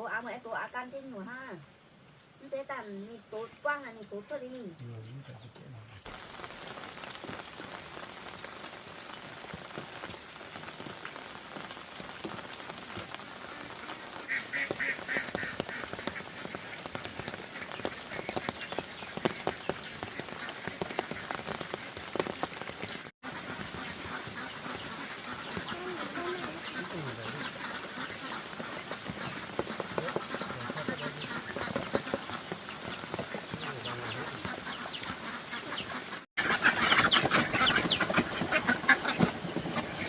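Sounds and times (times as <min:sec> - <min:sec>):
steady rushing hiss: 0:00.9 - 0:36.9
ducks quacking: 0:12.2 - 0:40.0.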